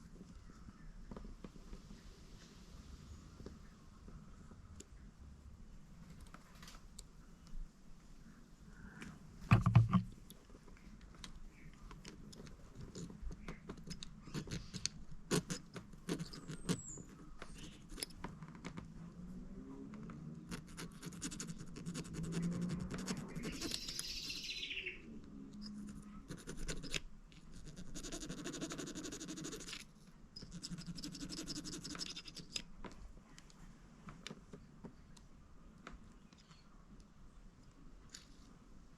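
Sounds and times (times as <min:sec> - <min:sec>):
small parts clicking and tapping: 0:11.0 - 0:18.8, 0:29.3 - 0:33.6
bird calling: 0:23.1 - 0:25.1.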